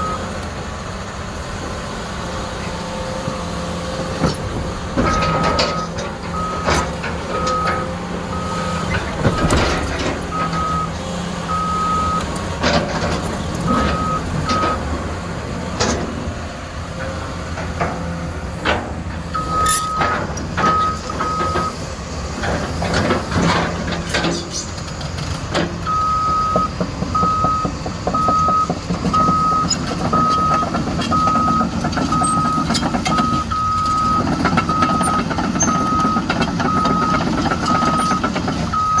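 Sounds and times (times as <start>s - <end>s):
travel alarm beeping: 0.0s - 0.2s, 5.6s - 8.9s, 10.3s - 12.3s, 13.7s - 14.8s, 19.4s - 21.8s, 25.9s - 39.0s
excavator diesel engine running: 0.0s - 39.0s.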